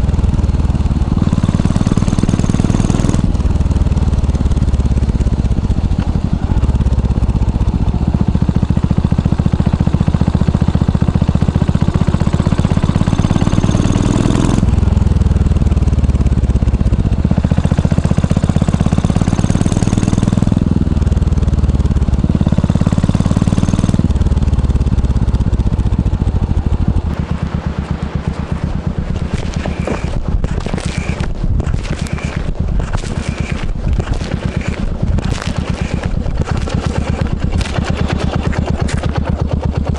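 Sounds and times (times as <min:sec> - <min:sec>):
motorcycle engine running: 0:00.0 - 0:39.9
crackling noise: 0:27.1 - 0:39.4.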